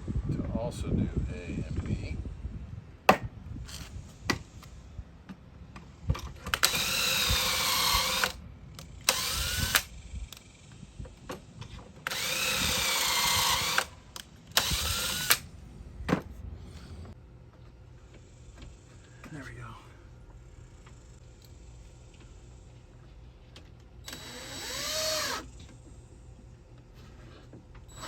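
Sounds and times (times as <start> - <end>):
power drill boring into wood: 6.5 - 8.4, 9.0 - 9.9, 12.1 - 15.4, 24.0 - 25.5.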